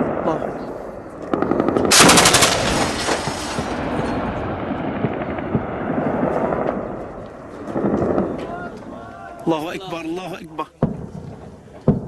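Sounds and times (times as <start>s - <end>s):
rolling echo: 0.0s - 9.4s
heavy machine gun burst: 1.9s - 4.0s.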